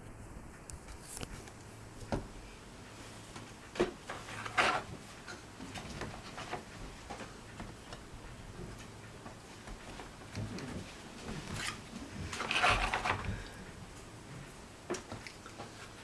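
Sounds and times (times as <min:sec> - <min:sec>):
faint low hum: 0:00.0 - 0:16.0.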